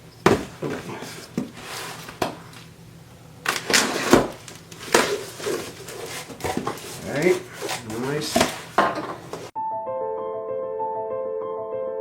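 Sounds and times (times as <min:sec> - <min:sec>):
packing rustling: 0:03.4 - 0:09.5.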